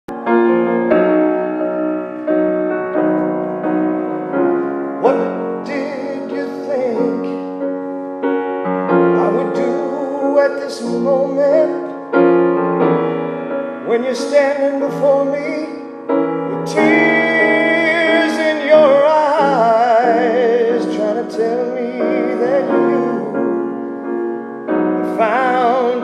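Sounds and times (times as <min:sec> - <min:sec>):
piano chords: 0:00.0 - 0:26.0
wordless singing with vibrato: 0:04.8 - 0:07.6, 0:09.1 - 0:12.1, 0:13.6 - 0:26.0.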